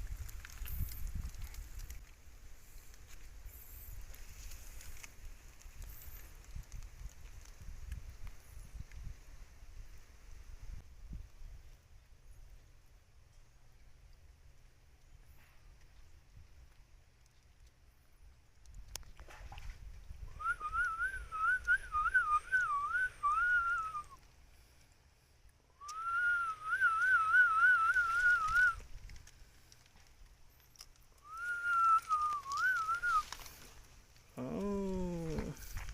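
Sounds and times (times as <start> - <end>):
high warbling whistle: 31.2 - 33.4.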